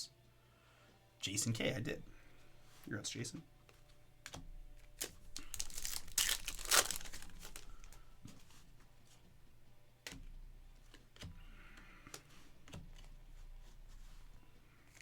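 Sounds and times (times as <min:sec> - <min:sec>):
foil wrapper tearing and crinkling: 0:04.8 - 0:08.0.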